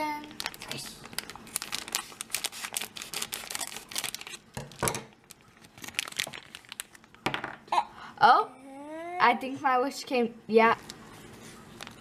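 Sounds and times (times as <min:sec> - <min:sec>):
plastic packaging crinkling: 0:00.2 - 0:07.3, 0:10.7 - 0:12.0
plastic ripping: 0:00.3 - 0:07.2.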